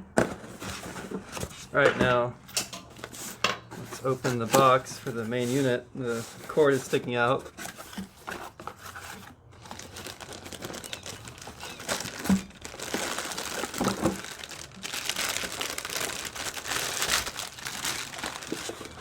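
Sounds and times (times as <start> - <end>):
packaging crinkling: 4.0 - 19.0.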